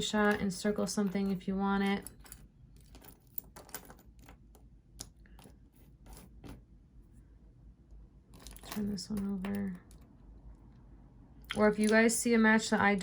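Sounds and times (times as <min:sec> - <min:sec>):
jewelry clicking and clattering: 0:00.0 - 0:06.7, 0:08.3 - 0:10.3, 0:11.4 - 0:12.3.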